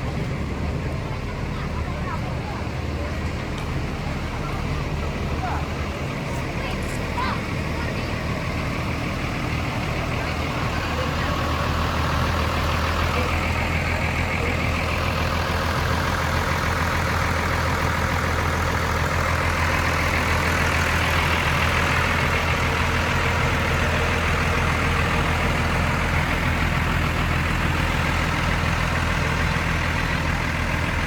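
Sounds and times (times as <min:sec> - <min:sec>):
heavy vehicle engine idling: 0:00.0 - 0:31.0.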